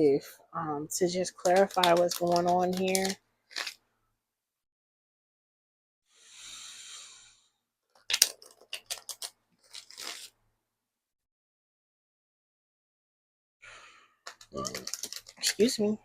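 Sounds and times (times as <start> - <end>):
card rustle: 1.4 - 3.8, 7.9 - 10.4, 14.3 - 15.8
cards snapping and clicking: 1.4 - 3.8, 8.0 - 10.3, 14.3 - 15.7
cards sliding while shuffled: 8.2 - 10.4.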